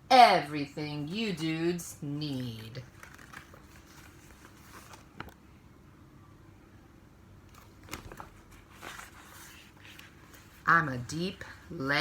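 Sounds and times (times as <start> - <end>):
paper rustling: 2.3 - 5.4, 7.5 - 12.0
page turning tick: 2.6 - 5.4.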